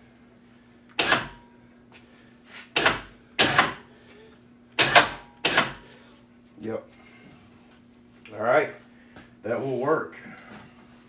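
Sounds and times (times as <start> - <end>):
sharp metallic clanks: 2.8 - 3.8, 4.8 - 5.8.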